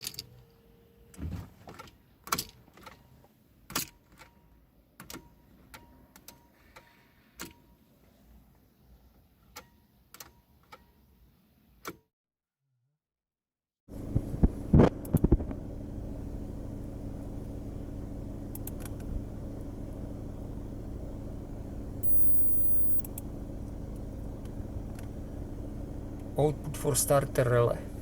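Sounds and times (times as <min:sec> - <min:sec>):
low mechanical hum: 0:13.9 - 0:28.0.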